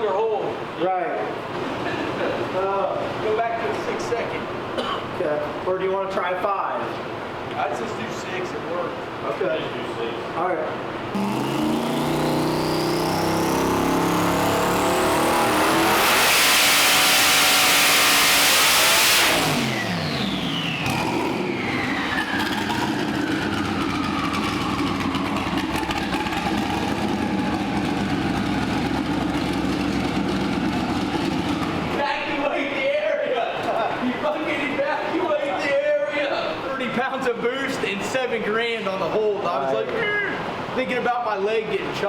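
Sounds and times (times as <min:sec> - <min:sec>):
turbo whine: 0:11.1 - 0:28.8
engine full-throttle pull: 0:11.1 - 0:32.0.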